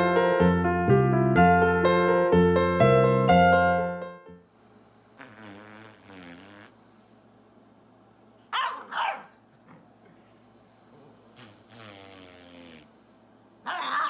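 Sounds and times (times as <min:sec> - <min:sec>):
dog growling: 0:05.2 - 0:06.8, 0:08.6 - 0:13.0, 0:13.6 - 0:14.0
dog barking: 0:08.5 - 0:09.9, 0:13.7 - 0:14.0.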